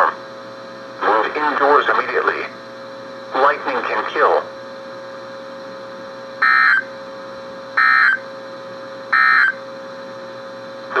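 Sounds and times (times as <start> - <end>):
steady low hum: 0.0 - 11.0
shrill digital data tone bursts: 6.4 - 6.9, 7.8 - 8.2, 9.2 - 9.6.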